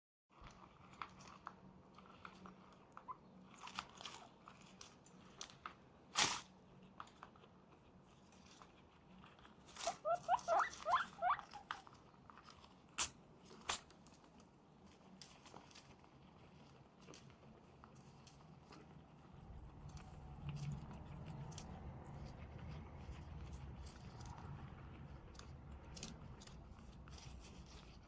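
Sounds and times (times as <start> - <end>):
guinea pigs chewing food: 0.3 - 28.0
guinea pig sneeze: 6.2 - 6.6, 9.8 - 11.9.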